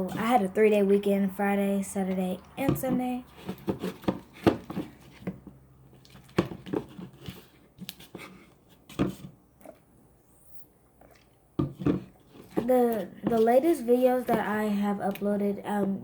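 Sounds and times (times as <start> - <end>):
sticky clicks of stirred slime: 14.3 - 15.4.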